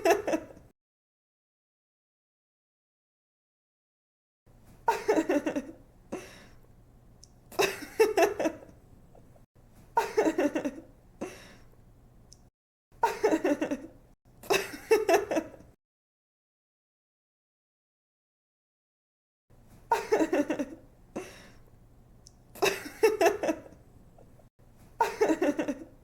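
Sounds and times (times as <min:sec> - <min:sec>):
woman giggling: 0:00.0 - 0:00.6, 0:04.9 - 0:05.8, 0:07.6 - 0:08.7, 0:13.0 - 0:15.7, 0:19.9 - 0:21.4, 0:22.6 - 0:23.8, 0:25.0 - 0:26.0.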